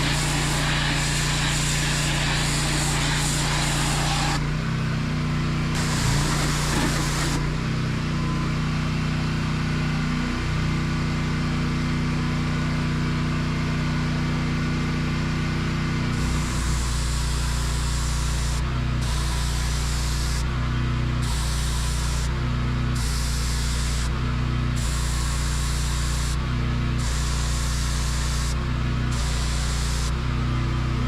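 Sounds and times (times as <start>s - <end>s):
pressure washer jet hissing: 0.0s - 4.5s, 5.7s - 7.5s, 16.2s - 20.5s, 21.2s - 22.4s, 23.0s - 24.1s, 24.8s - 26.4s, 27.0s - 30.2s
pressure washer engine hum: 0.0s - 11.7s, 13.7s - 31.0s.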